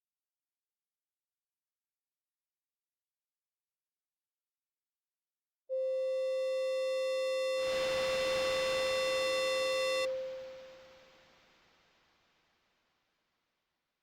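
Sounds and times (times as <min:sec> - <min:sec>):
steady electronic tone: 0:05.8 - 0:11.2.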